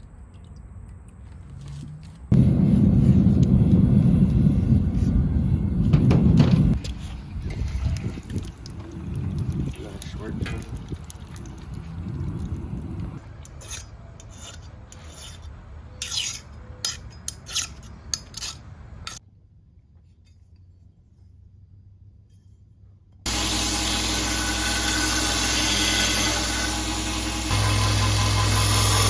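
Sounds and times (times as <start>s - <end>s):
file rasping over steel blade: 13.5s - 19.2s, 23.3s - 29.0s
motor-driven shop tool humming: 23.3s - 29.0s.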